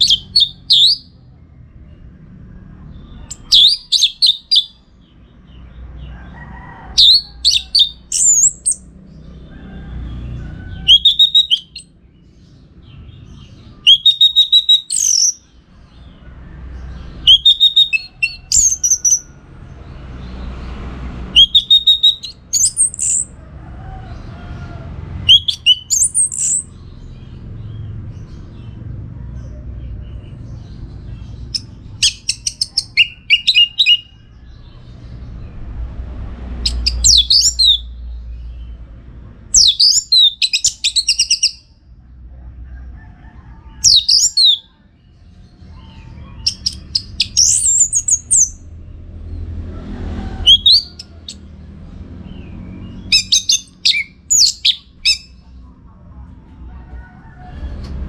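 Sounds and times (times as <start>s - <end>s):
thrush whistled song: 0.0s - 1.1s, 3.3s - 4.8s, 7.0s - 8.9s, 10.8s - 11.9s, 13.8s - 15.4s, 17.2s - 19.3s, 21.3s - 23.3s, 25.2s - 26.7s, 32.0s - 34.2s, 36.6s - 37.9s, 39.6s - 41.6s, 50.4s - 51.4s, 53.0s - 55.3s.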